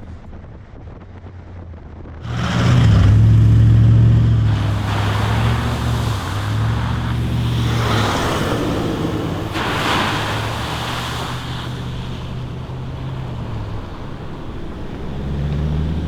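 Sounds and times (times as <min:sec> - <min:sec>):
rushing noise: 0:02.2 - 0:15.4
vehicle engine under load: 0:02.2 - 0:16.0.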